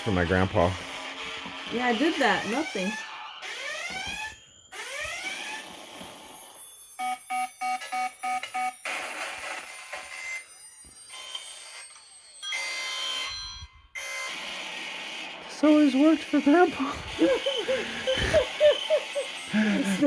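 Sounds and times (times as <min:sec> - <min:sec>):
rapid alarm beeping: 0:00.8 - 0:15.3, 0:16.3 - 0:20.0
ringing alarm tones: 0:00.8 - 0:15.4, 0:16.9 - 0:20.0
gliding alarm tones: 0:01.6 - 0:14.4, 0:16.9 - 0:20.0.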